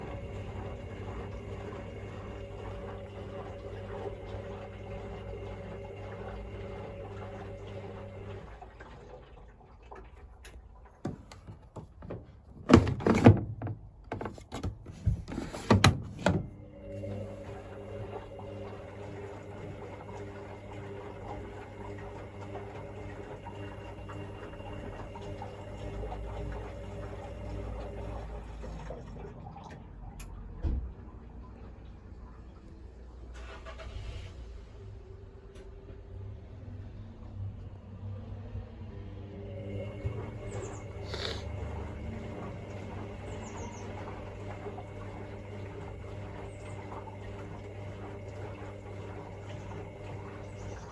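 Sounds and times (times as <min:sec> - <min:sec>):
washing machine hum: 0:00.0 - 0:50.9
washing machine clicks: 0:10.5 - 0:17.3
washing machine knocks: 0:11.0 - 0:16.6.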